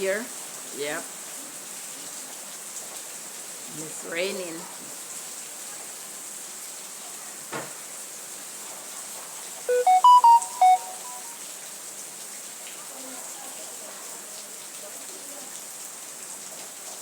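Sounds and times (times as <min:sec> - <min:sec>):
phone ringtone melody: 0:09.7 - 0:11.4.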